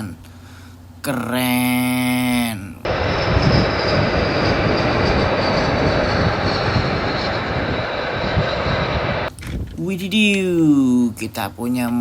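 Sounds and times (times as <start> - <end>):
faint high engine whine: 2.8 - 9.7
jet engines rushing: 2.9 - 9.3.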